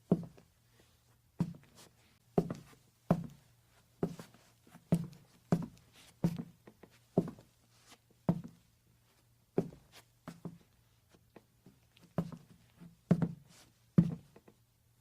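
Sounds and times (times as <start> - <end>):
footsteps on wooden floor: 2.4 - 3.4, 4.0 - 7.5, 8.3 - 8.6, 11.3 - 13.4.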